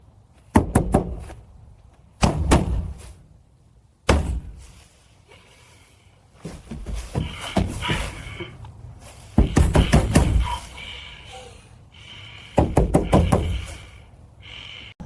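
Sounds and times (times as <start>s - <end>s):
heavy pounding on a door: 9.4s - 10.6s, 12.6s - 13.6s.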